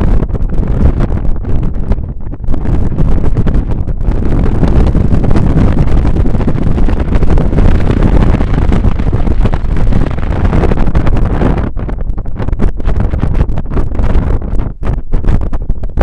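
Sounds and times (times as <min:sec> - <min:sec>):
gusty wind buffeting microphone: 0:00.0 - 0:16.0.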